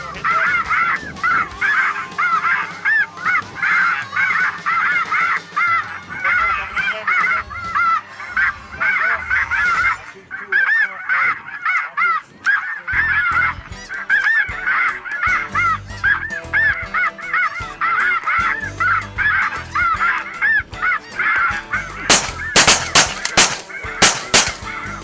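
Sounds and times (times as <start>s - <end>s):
geese honking: 0.2s - 9.7s, 10.3s - 16.2s.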